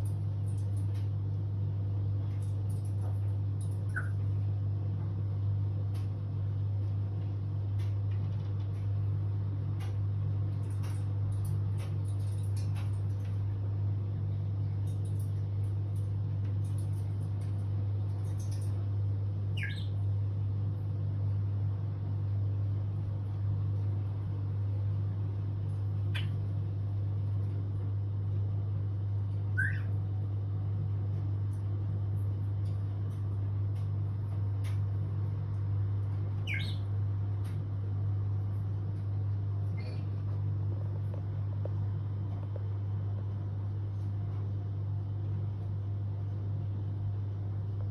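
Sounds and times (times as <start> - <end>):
steady low hum: 0.0 - 47.9
parrot whistling: 29.6 - 29.9.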